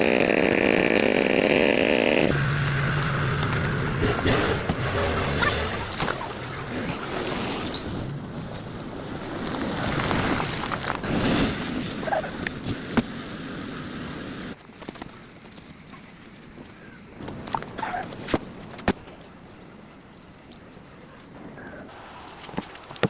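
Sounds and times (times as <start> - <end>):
rushing floodwater: 2.4 - 11.0.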